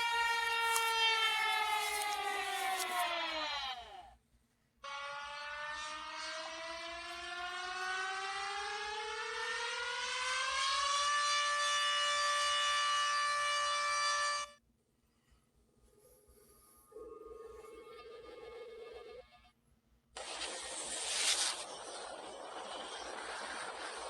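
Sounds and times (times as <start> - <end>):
reversed siren tone: 0.0 - 4.0, 4.8 - 14.6.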